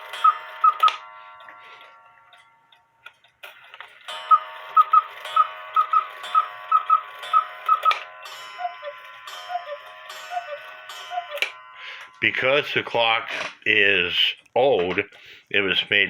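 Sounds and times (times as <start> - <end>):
cuckoo clock calls: 0.0 - 2.5, 4.0 - 13.0
clock ticking: 0.0 - 16.0
quail pipe calls: 4.8 - 8.0, 8.6 - 11.6.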